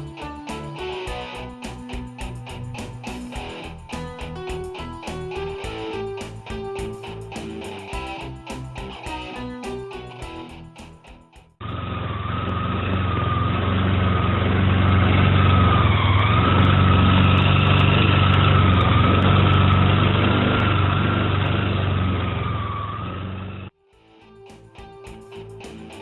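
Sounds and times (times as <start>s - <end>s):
scooter engine running: 11.6s - 23.7s.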